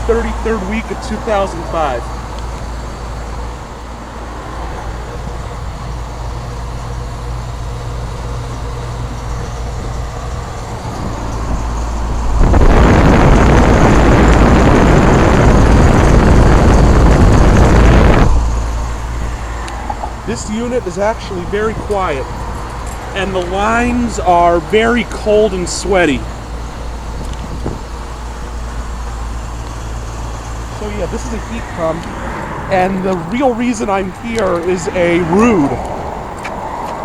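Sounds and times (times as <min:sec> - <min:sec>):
heat pump compressor hum: 0:00.0 - 0:37.0
loud rushing noise: 0:09.0 - 0:37.0.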